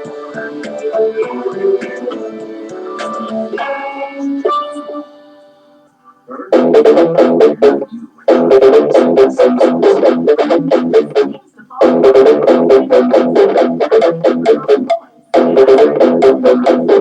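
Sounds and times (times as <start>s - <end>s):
instrumental ringtone: 0.0s - 5.9s.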